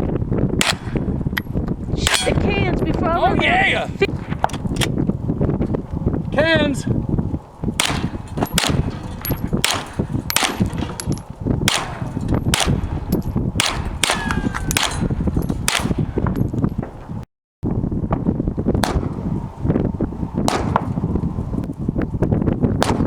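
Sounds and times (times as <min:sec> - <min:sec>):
gunshots: 0:00.6 - 0:01.0, 0:07.8 - 0:11.0, 0:11.6 - 0:13.0, 0:13.6 - 0:16.2
metallic clang of targets: 0:02.0 - 0:02.4, 0:07.8 - 0:16.5.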